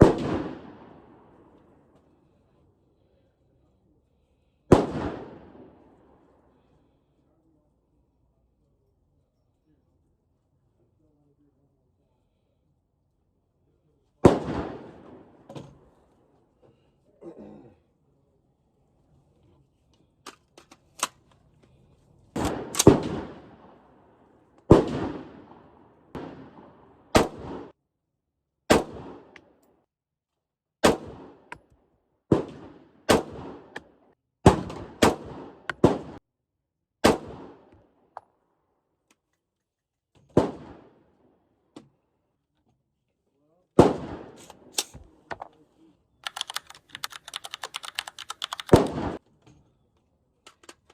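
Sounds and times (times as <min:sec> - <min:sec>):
rifle shots echoing: 0:00.0 - 0:01.6, 0:04.7 - 0:06.0, 0:14.2 - 0:15.5, 0:22.4 - 0:24.0, 0:24.7 - 0:27.7, 0:28.7 - 0:29.4, 0:30.8 - 0:31.5, 0:32.3 - 0:33.8, 0:34.5 - 0:36.2, 0:37.0 - 0:37.7, 0:40.4 - 0:41.0, 0:43.8 - 0:45.2, 0:48.7 - 0:49.2.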